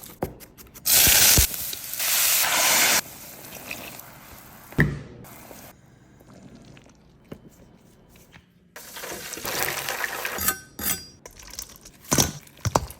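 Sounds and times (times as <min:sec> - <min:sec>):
kitchenware clinking and rattling: 0:10.2 - 0:12.9.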